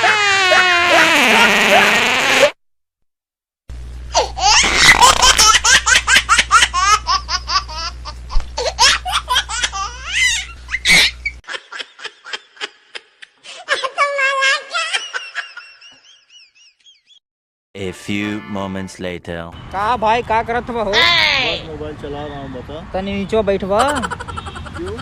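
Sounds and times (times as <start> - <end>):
high-pitched laughter: 0.0 - 2.5, 4.2 - 17.1, 23.8 - 25.0.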